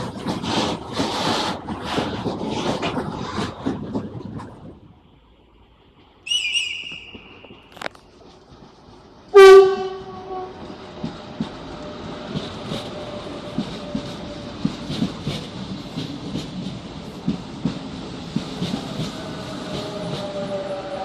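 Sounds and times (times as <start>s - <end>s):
train wheels clacking: 0.0s - 4.8s, 5.8s - 21.0s
train rumble: 0.0s - 21.0s
train horn blast: 9.3s - 10.7s.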